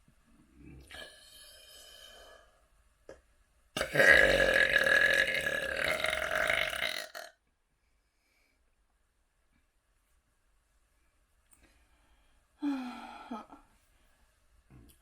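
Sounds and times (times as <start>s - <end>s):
person burping: 3.8s - 7.3s.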